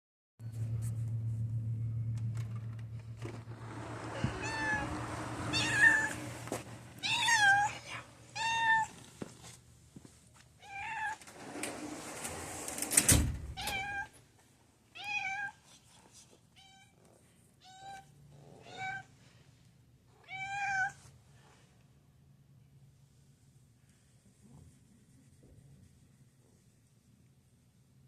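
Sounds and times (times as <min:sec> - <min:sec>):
low steady hum: 0:00.4 - 0:10.5
cat meowing: 0:04.1 - 0:06.2, 0:07.0 - 0:09.0, 0:10.6 - 0:11.2, 0:17.6 - 0:19.1, 0:20.2 - 0:21.0.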